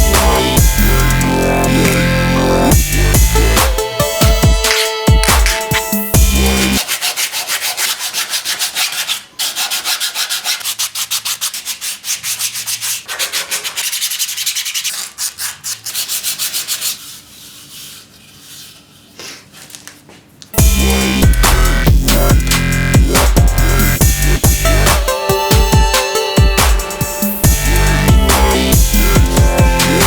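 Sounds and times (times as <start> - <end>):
rapid rubbing strokes: 0.0 - 19.2, 26.8 - 30.0.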